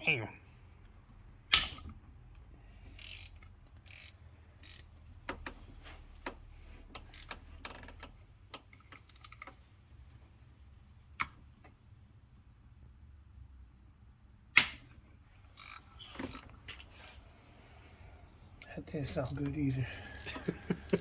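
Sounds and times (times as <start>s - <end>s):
hand tools clicking on metal bolts: 2.9s - 5.6s, 7.0s - 9.5s.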